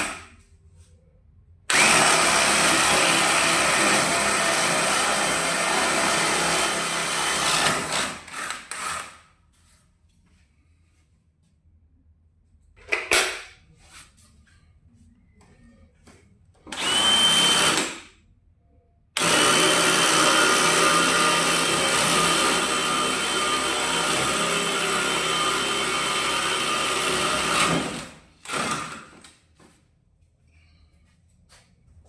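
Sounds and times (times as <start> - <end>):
cordless hammer drill running: 1.7 - 9.2, 16.7 - 18.0, 19.2 - 29.3.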